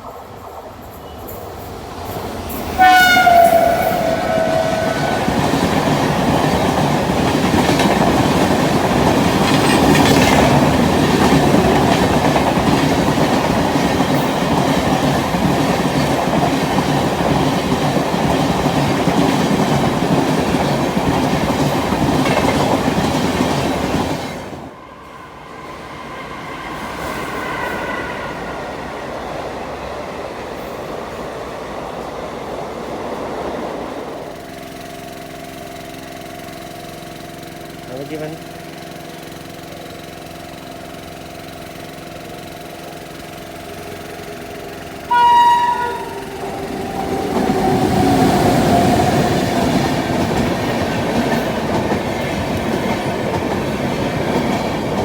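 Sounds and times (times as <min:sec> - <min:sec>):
train coaches clattering past: 0:00.0 - 0:55.0
train horn: 0:02.8 - 0:06.8, 0:26.5 - 0:29.0, 0:43.4 - 0:49.8.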